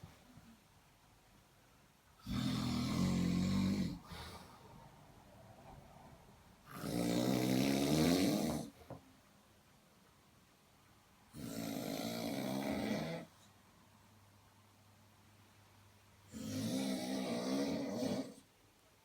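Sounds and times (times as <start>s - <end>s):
man snoring heavily: 2.2s - 4.5s, 6.7s - 8.7s, 11.3s - 13.3s, 16.3s - 18.4s.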